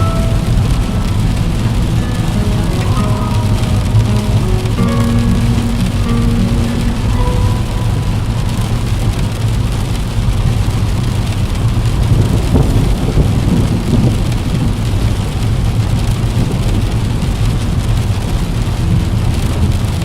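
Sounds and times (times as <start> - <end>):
rain falling on a window: 0.0 - 20.0
deep rumble of thunder: 8.3 - 20.0.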